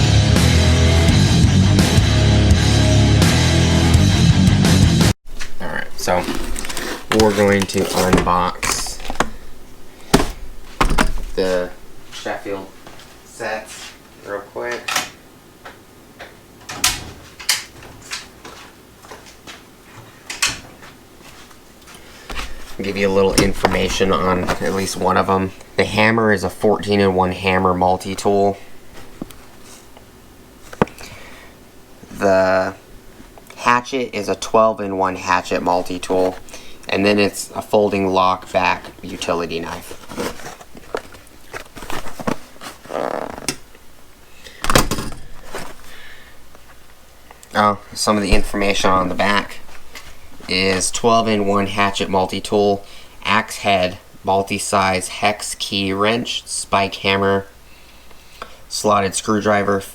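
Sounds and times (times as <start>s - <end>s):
packaging rustling: 5.3s - 13.2s, 22.0s - 25.9s, 38.4s - 43.8s, 44.6s - 46.9s, 48.3s - 53.1s
packaging clicks: 5.4s - 12.0s
clicks and knocks of handling tools: 14.7s - 19.6s.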